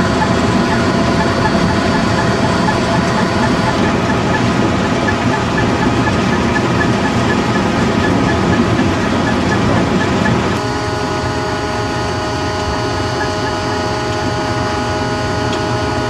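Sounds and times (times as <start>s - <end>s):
light regular ticking: 0.0s - 10.6s
heavy vehicle engine running: 0.0s - 16.0s.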